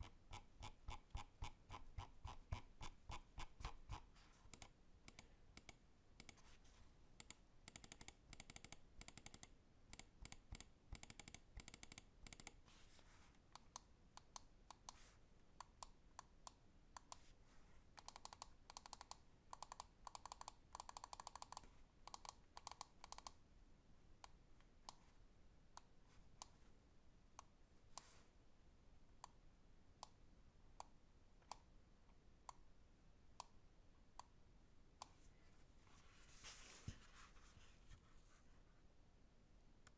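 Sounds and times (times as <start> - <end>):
computer mouse clicking: 0.0 - 6.5, 7.2 - 12.6, 13.5 - 15.0, 15.6 - 17.2, 18.0 - 23.4.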